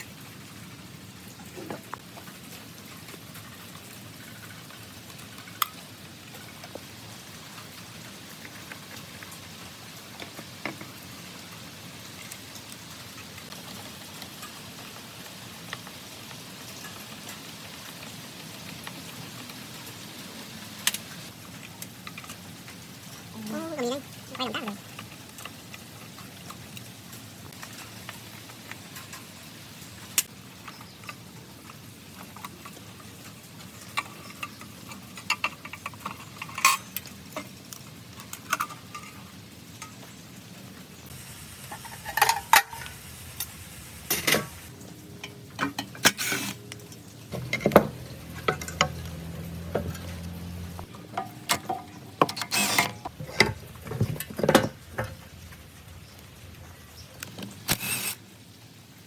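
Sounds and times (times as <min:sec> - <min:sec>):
metal tools clinking: 0:33.6 - 0:37.6, 0:41.7 - 0:43.0.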